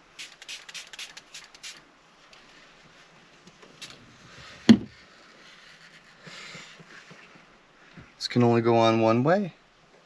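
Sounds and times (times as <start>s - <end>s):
spray bottle squirts: 0.0s - 1.8s.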